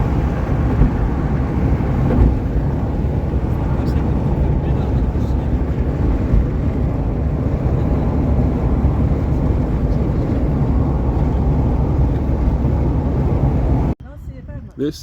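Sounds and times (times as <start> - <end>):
steady low rumbling: 0.0 - 14.6.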